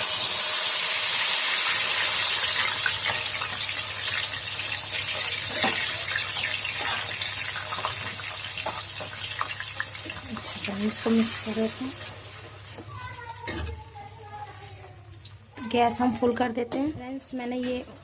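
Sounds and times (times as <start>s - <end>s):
paste sizzling in hot oil: 0.0s - 13.4s.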